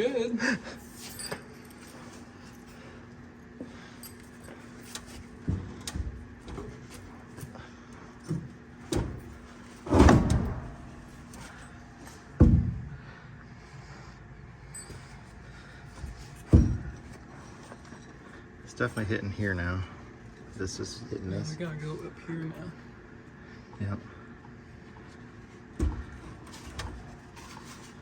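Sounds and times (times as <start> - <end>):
pry bar clunking on metal frame: 9.8 - 11.1.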